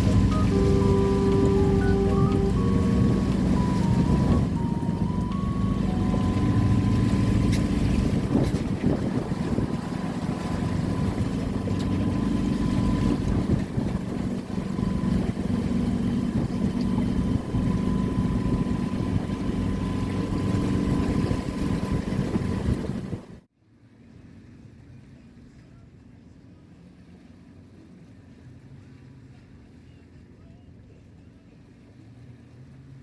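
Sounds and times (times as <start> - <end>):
boat engine running: 0.0 - 23.4
wind noise on microphone: 0.0 - 23.4.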